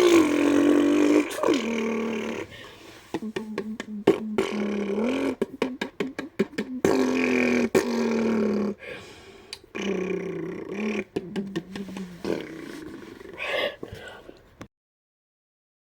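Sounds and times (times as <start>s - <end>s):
boy imitating car engine: 0.0s - 2.5s, 3.2s - 8.8s, 9.7s - 12.6s.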